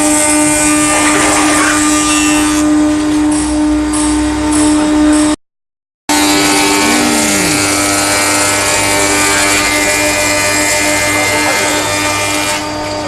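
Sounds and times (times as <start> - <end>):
wood planer whine and hiss: 6.1 - 13.0.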